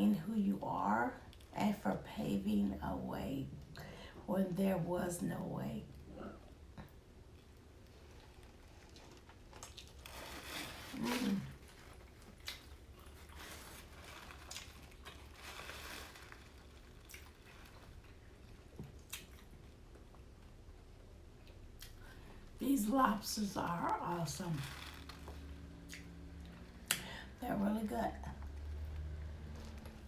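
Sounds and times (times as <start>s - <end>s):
close-miked chewing and biting: 8.1s - 20.1s
wet crunches and clicks: 8.2s - 10.6s, 11.6s - 20.2s.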